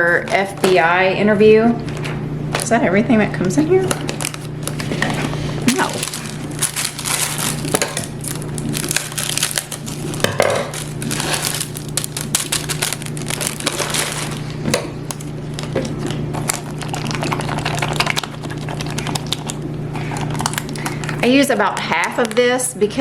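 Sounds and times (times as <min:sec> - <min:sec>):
steady low hum: 0:00.0 - 0:23.0
plastic bag crinkling: 0:03.8 - 0:21.2.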